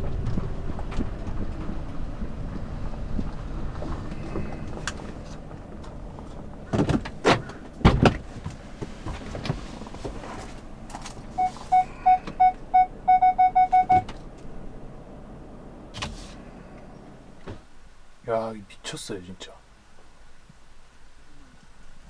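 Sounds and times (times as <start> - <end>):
parking sensor beeping: 11.2 - 14.6.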